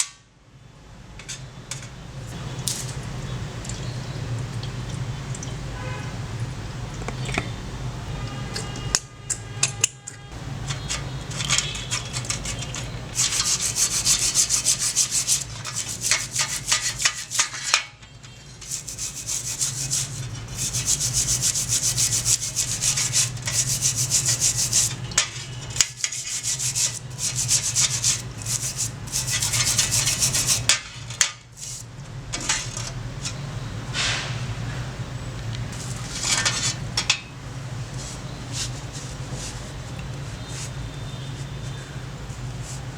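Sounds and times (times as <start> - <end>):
low steady hum: 2.2 - 8.9
abrasive rubbing on metal: 10.4 - 17.8, 18.6 - 30.8, 31.6 - 31.8.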